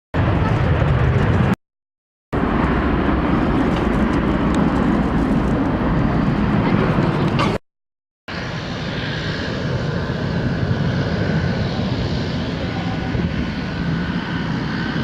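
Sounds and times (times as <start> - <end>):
jet engine rumble: 0.2 - 1.6, 2.4 - 7.6, 8.3 - 15.0.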